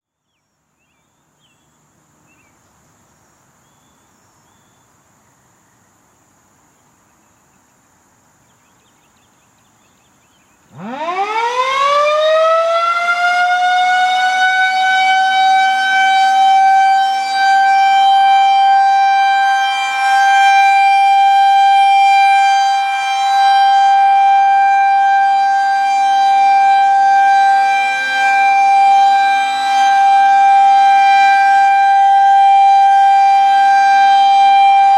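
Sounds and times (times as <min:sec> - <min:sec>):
warning siren wailing: 0:10.7 - 0:34.9.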